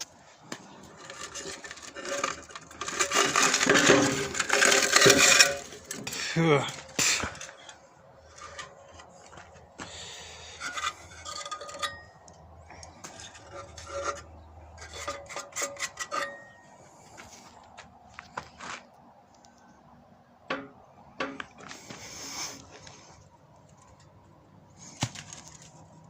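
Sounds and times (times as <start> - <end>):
metal scraping and clinking: 0.5 - 17.3, 20.5 - 21.8
short metallic rings: 10.6 - 12.4, 13.4 - 16.8.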